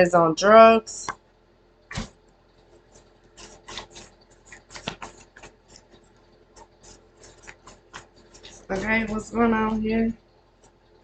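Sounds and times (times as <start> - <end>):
cards being shuffled: 3.0 - 5.9.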